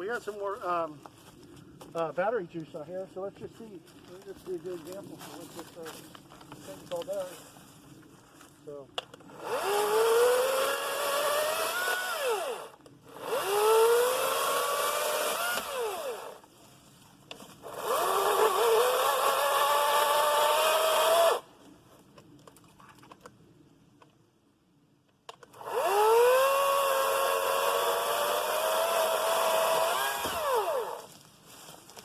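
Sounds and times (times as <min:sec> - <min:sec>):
electric chainsaw whining: 0:09.3 - 0:16.4, 0:17.6 - 0:21.5, 0:25.5 - 0:31.1.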